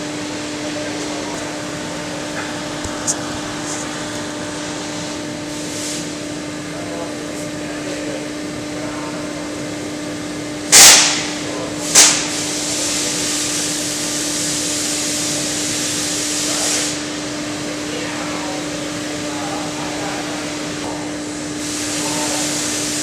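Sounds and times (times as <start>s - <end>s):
machine hum: 0.0s - 23.0s
steady air hiss: 0.6s - 7.9s, 10.7s - 23.0s
compressed air blasts: 1.4s - 6.4s, 10.7s - 17.5s, 20.2s - 23.0s.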